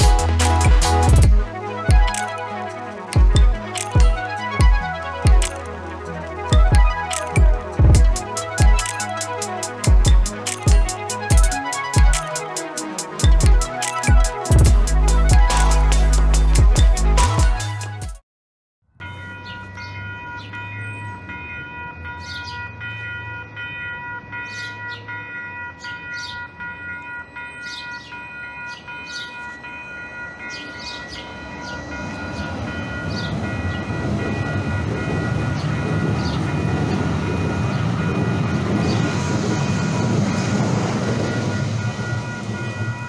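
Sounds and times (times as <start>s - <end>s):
steady high whine: 0.0s - 17.9s, 31.1s - 43.0s
train rumbling on rails: 31.0s - 43.0s.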